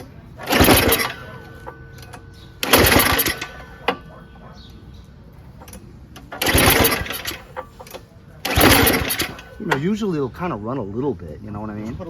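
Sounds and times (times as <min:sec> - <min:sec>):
small engine turning over: 0:00.0 - 0:04.8, 0:05.5 - 0:10.0
recoil starter pull: 0:00.0 - 0:10.3.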